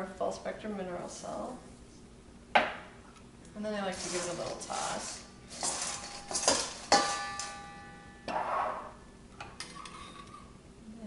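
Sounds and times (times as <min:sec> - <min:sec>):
popcorn rustling in a bowl: 0:03.8 - 0:07.6.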